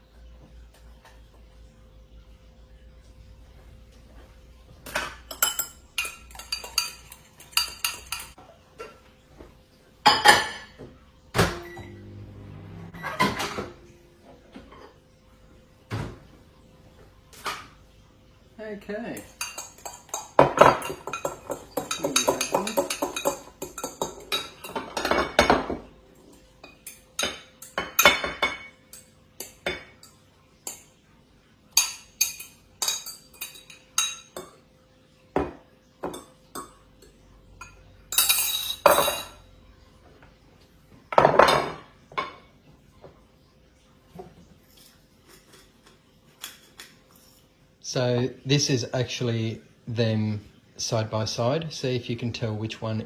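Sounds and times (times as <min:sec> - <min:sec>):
cutlery scraping and clinking dishes: 0:04.9 - 0:09.0, 0:19.2 - 0:30.9, 0:31.8 - 0:34.6, 0:36.1 - 0:39.4, 0:44.1 - 0:47.6.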